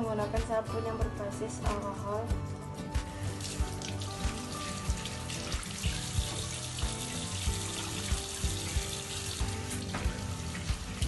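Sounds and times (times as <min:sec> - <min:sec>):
background music with steady beat: 0:00.0 - 0:11.0
water running from a tap: 0:03.1 - 0:11.0.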